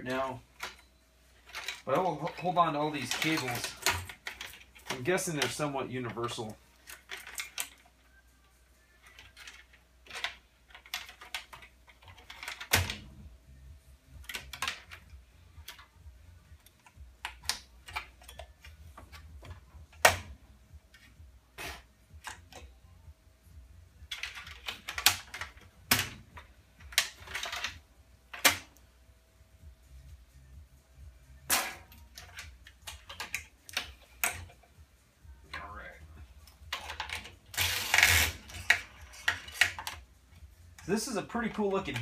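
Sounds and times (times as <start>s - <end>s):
plastic and metal parts clicking: 0.5s - 7.9s, 9.0s - 13.1s, 14.2s - 16.0s, 24.0s - 28.8s, 31.9s - 34.7s, 36.5s - 40.1s.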